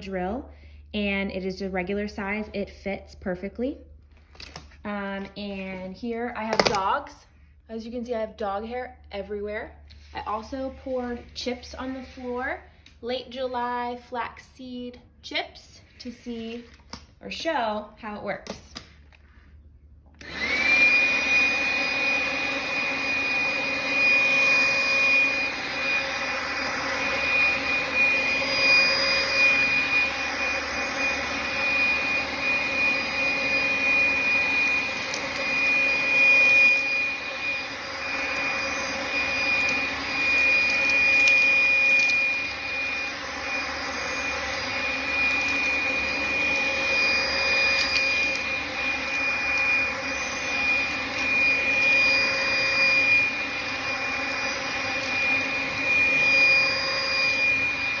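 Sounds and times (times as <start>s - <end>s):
vacuum cleaner motor whine: 20.2s - 58.0s.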